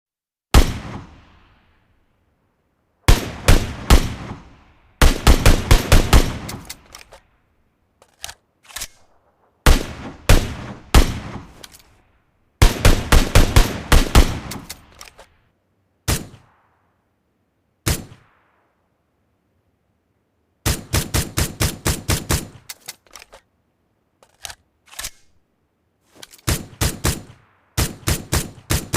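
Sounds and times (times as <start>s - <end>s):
rifle shots: 0.5s - 1.7s, 3.1s - 7.2s, 8.7s - 12.0s, 12.6s - 15.3s, 16.1s - 16.8s, 20.6s - 22.8s, 26.4s - 28.9s.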